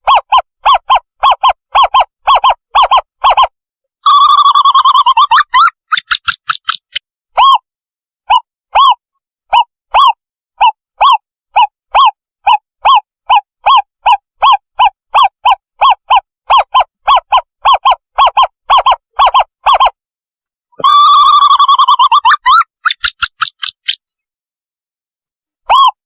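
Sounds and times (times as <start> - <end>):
owl decoy hooting: 8.3 - 19.9.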